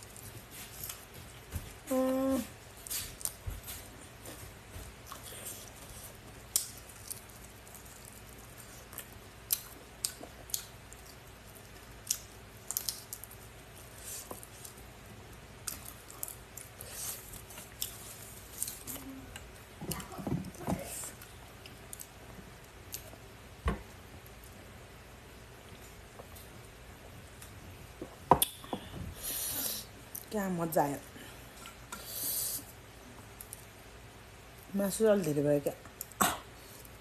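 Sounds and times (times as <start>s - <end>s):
chewing and wet squishing: 2.8s - 20.2s.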